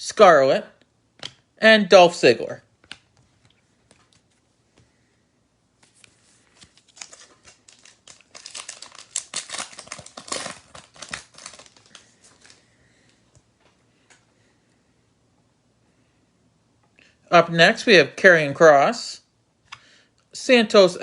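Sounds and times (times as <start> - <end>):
foil wrapper crinkling: 5.9 - 12.6.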